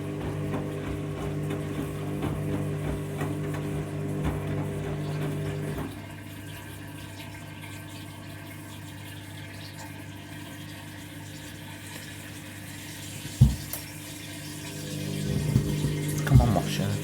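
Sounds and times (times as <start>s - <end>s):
washing machine motor hum: 0.0s - 6.5s, 12.8s - 17.0s
water running into machine: 0.0s - 17.0s.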